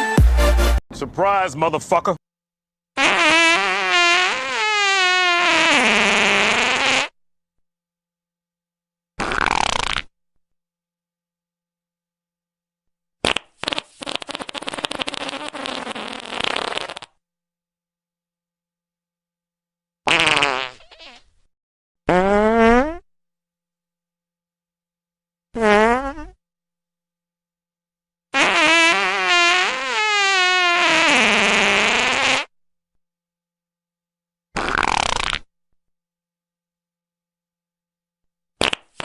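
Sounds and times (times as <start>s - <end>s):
fart sound effects: 3.0s - 7.2s, 9.2s - 10.1s, 13.2s - 17.2s, 20.1s - 21.4s, 22.1s - 23.1s, 25.6s - 26.4s, 28.4s - 32.5s, 34.6s - 35.5s, 38.6s - 39.0s.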